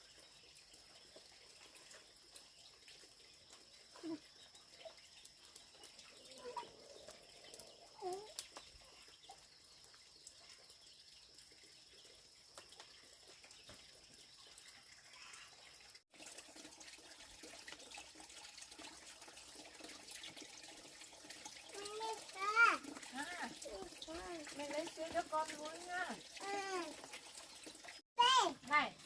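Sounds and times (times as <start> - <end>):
faint chirping calls: 0.0 - 15.9.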